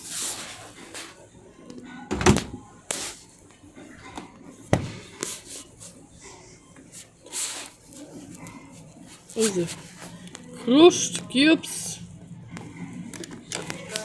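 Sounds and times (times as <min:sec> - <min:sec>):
refrigerator door thud: 0:02.1 - 0:02.6, 0:04.8 - 0:05.2.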